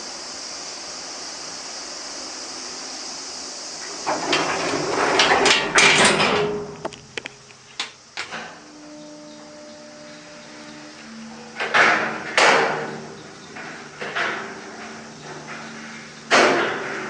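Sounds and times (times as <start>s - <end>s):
steady hiss: 0.0s - 17.0s
elevator rattling scrape: 3.8s - 7.4s, 9.8s - 17.0s
elevator clunks: 3.8s - 7.5s, 9.7s - 17.0s.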